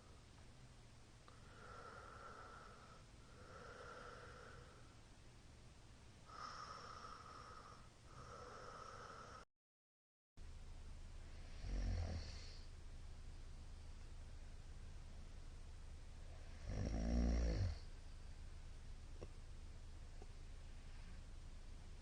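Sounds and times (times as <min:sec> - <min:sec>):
man breathing noisily: 0:01.4 - 0:04.9, 0:06.3 - 0:09.4.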